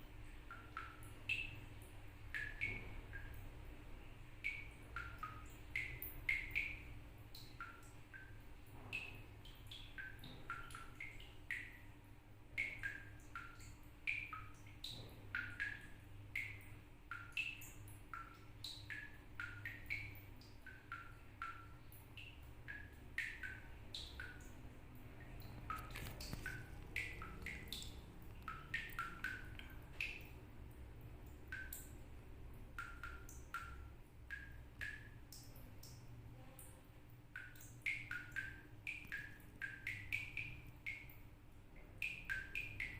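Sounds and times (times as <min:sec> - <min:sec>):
water drops plinking: 0:04.4 - 0:11.8, 0:12.5 - 0:30.4, 0:32.8 - 0:36.0, 0:37.4 - 0:41.2, 0:42.0 - 0:42.9.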